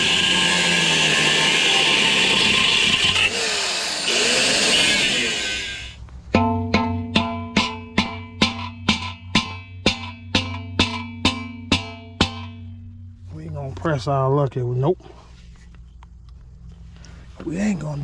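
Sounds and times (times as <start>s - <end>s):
power tool grinding metal: 0.0s - 6.0s.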